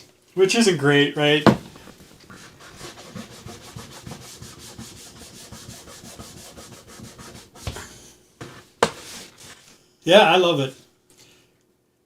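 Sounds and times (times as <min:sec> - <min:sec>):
hand rubbing on housing: 0:01.7 - 0:09.6.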